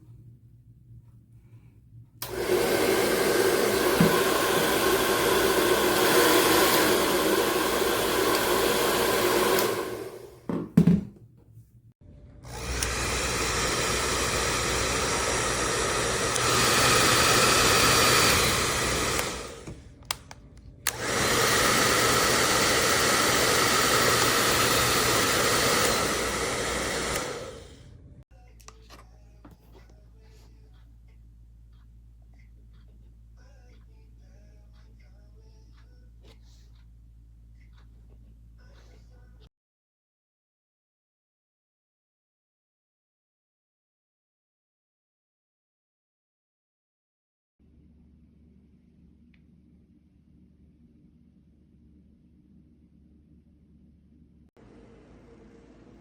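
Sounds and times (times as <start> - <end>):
hair dryer blowing: 2.2 - 10.6, 12.5 - 20.2, 20.8 - 27.8.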